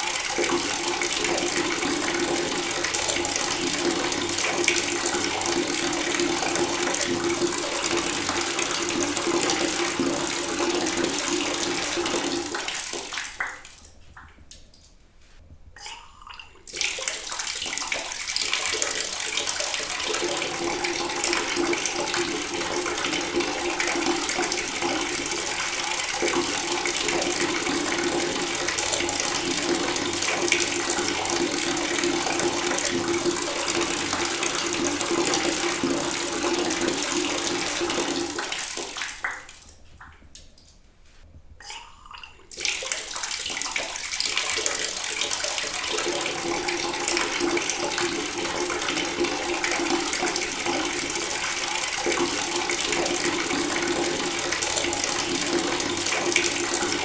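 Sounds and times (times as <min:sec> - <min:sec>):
water running from a tap: 0:00.0 - 0:13.6, 0:16.7 - 0:39.6, 0:42.5 - 0:57.0.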